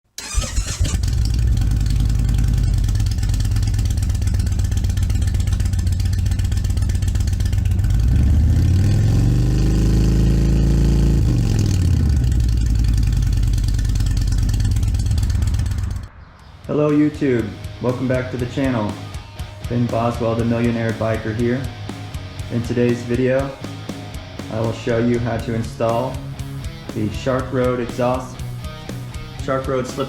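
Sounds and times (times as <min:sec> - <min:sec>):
motorcycle engine idling and revving: 0:00.2 - 0:16.4.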